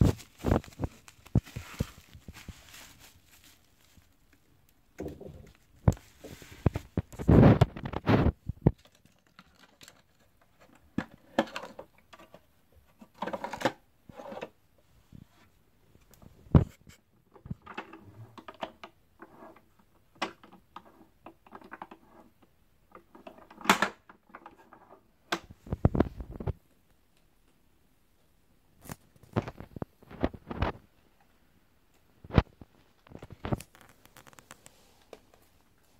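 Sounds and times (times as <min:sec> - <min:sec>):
packaging rustling: 0:00.0 - 0:04.4, 0:33.1 - 0:35.6.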